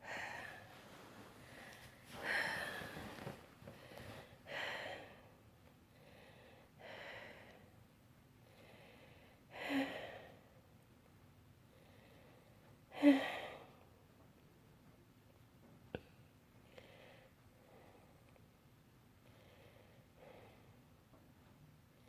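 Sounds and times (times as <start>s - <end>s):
woman breathing heavily: 0.0s - 7.8s, 8.4s - 10.6s, 11.7s - 13.8s, 16.6s - 18.3s, 19.2s - 20.8s.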